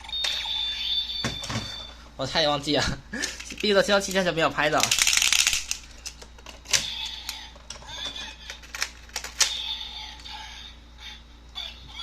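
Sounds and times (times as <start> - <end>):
plastic toy pieces clicking: 4.8 - 7.4.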